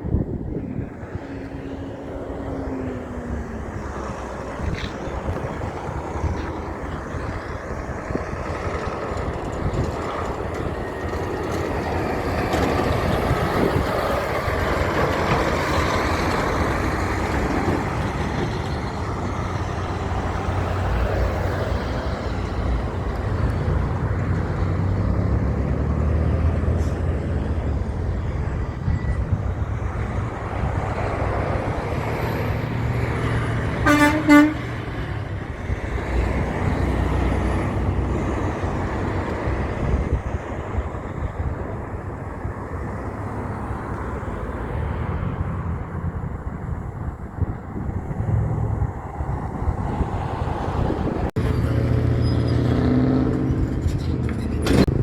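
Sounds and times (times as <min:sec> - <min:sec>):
tyres on road: 0:00.0 - 0:55.0.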